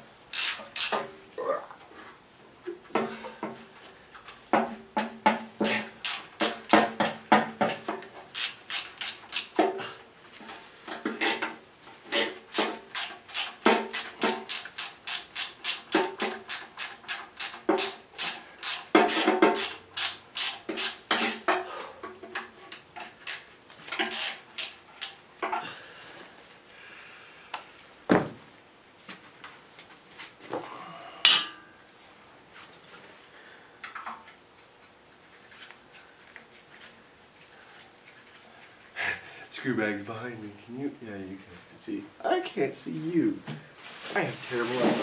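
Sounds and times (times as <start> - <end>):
socket ratchet clicking: 0.3 - 1.0, 5.6 - 7.1, 8.3 - 9.6, 12.2 - 21.4, 22.7 - 25.2.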